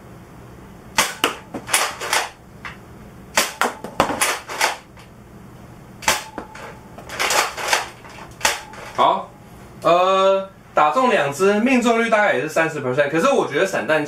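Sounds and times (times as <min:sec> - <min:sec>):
toy dart gun cocking and firing: 0:01.0 - 0:02.4.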